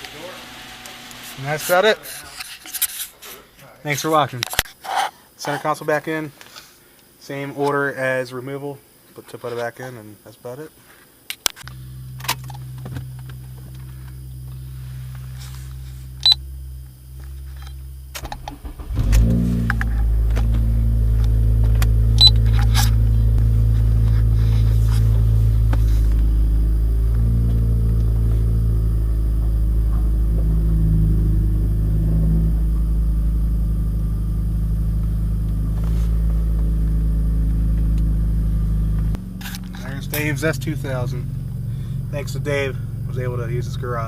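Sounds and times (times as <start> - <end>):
car engine cranking and idling: 11.6 - 44.0.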